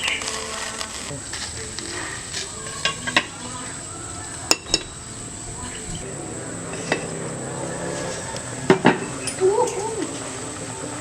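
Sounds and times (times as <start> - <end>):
steady background hiss: 0.0 - 11.0
metal utensil clinking on pan: 4.5 - 5.0.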